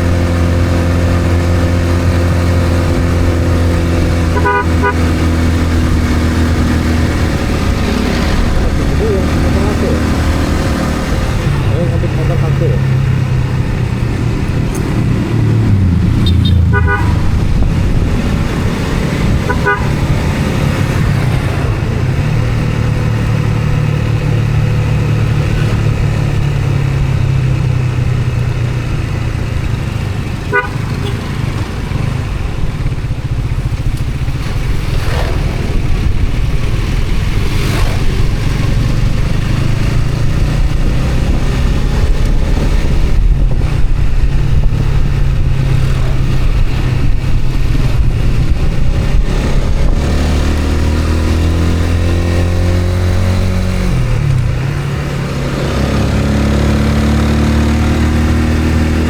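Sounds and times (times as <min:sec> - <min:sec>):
vehicle rumble on road: 0:00.0 - 0:59.0
horn toots: 0:04.0 - 0:05.7, 0:16.0 - 0:18.2, 0:19.1 - 0:20.8, 0:30.4 - 0:31.4.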